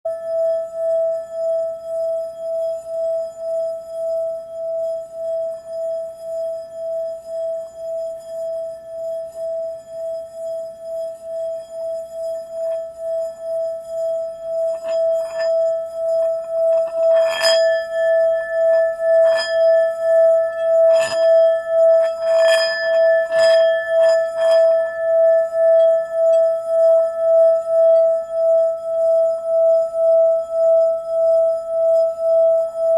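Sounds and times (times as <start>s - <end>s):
singing bowl ringing: 0.1s - 32.9s
singing bowl strikes: 14.6s - 32.9s.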